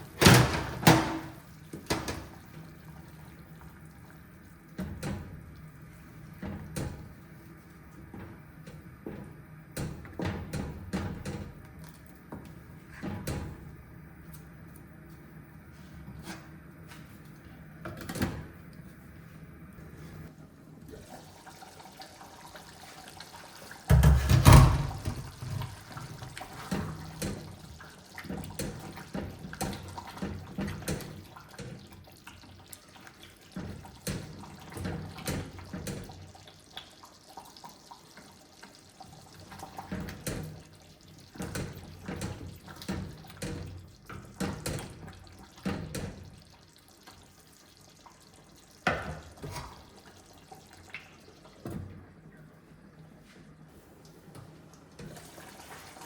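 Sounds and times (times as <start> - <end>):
dishes clattering in sink: 0.2 - 2.3, 23.9 - 25.8
tap water running into sink: 21.0 - 51.9.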